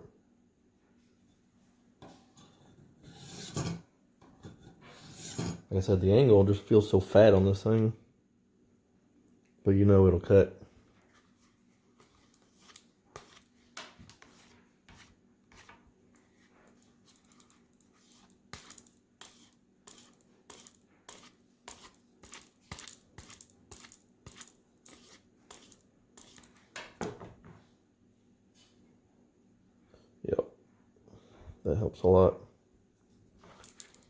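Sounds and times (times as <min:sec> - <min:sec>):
knife blade strokes: 0:18.0 - 0:26.5.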